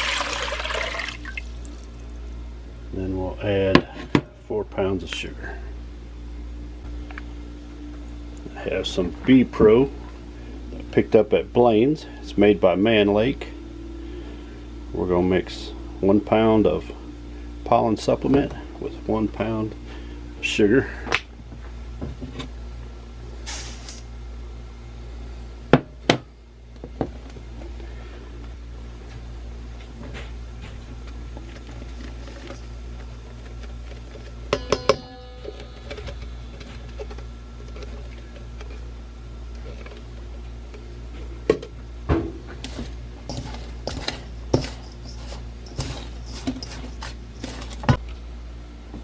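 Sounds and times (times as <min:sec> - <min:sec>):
steady low hum: 0:00.0 - 0:49.0
utensils knocking on containers: 0:34.5 - 0:36.2
utensils scraping: 0:42.6 - 0:48.0.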